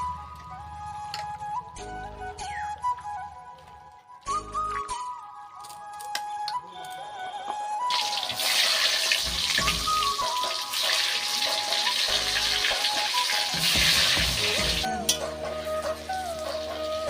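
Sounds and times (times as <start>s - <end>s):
background music with melody: 0.0s - 17.0s
cooking hiss: 7.9s - 17.0s.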